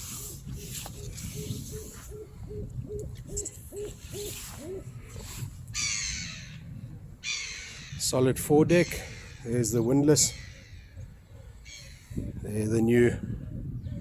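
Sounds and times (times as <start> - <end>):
bird harsh rasping call: 0.0 - 6.6, 7.2 - 8.0, 8.8 - 9.6
bird hooting: 0.0 - 6.6.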